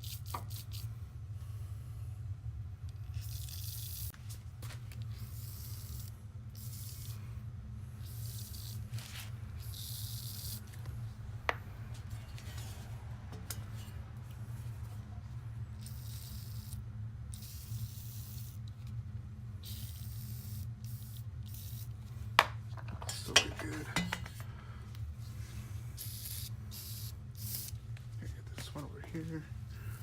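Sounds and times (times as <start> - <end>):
steady low hum: 0.0 - 30.0
aerosol spray hissing: 8.0 - 8.9, 19.6 - 21.9, 26.0 - 27.8.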